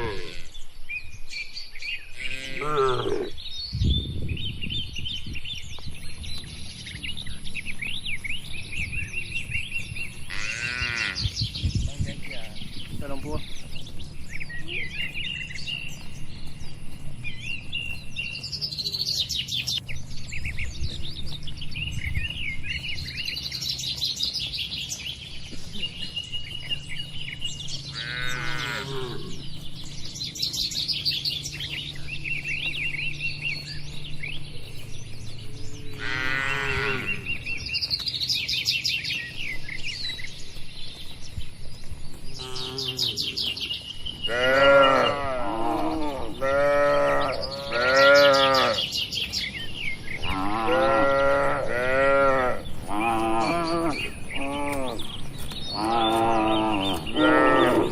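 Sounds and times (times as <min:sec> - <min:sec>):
cattle mooing: 0:00.0 - 0:00.6, 0:02.2 - 0:03.4, 0:10.3 - 0:11.2, 0:27.9 - 0:29.4, 0:35.9 - 0:37.3, 0:42.4 - 0:43.3, 0:44.2 - 0:48.9, 0:50.2 - 0:55.1, 0:55.8 - 0:57.9
small birds chirping: 0:00.0 - 0:57.9
steady low hum: 0:12.4 - 0:44.3.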